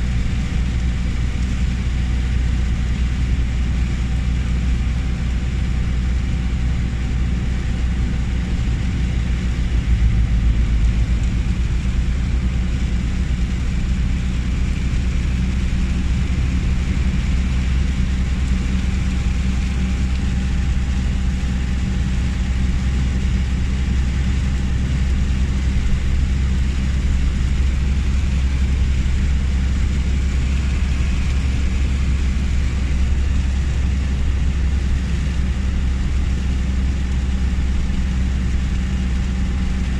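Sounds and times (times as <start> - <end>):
car engine and tyre noise: 0.0 - 39.9
hiss of rain and road spray: 8.4 - 39.9.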